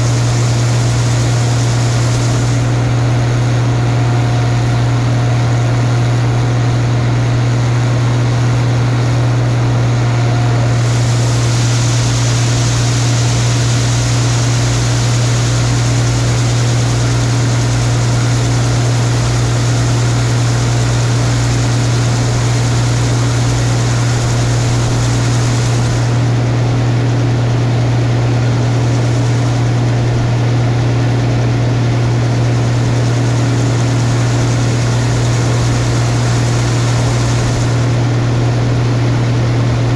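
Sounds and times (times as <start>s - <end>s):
high hiss: 0.0s - 2.8s, 10.7s - 27.1s, 32.6s - 39.4s
combine harvester running: 0.0s - 39.9s.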